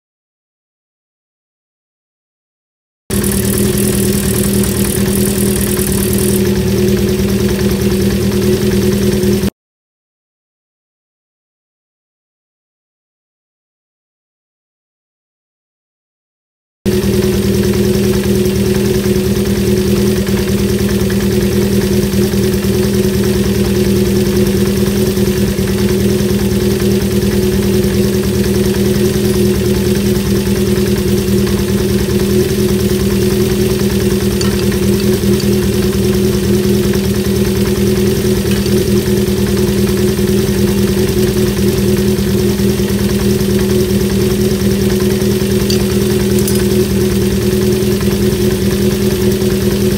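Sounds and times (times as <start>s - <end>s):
motorcycle engine idling: 3.1s - 9.5s, 16.9s - 49.9s.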